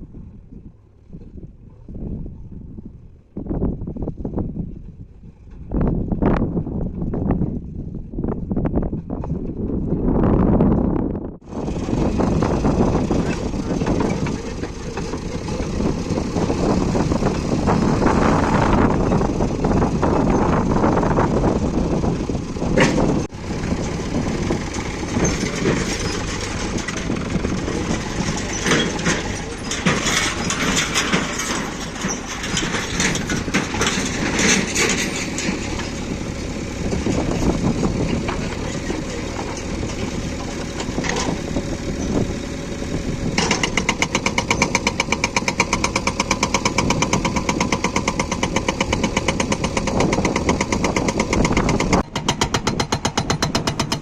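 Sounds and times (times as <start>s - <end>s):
backhoe engine running: 8.5s - 54.0s
clattering and knocks: 12.5s - 18.1s, 22.8s - 36.2s, 36.9s - 41.5s, 43.4s - 54.0s
hydraulic rock breaker hammering: 43.4s - 54.0s.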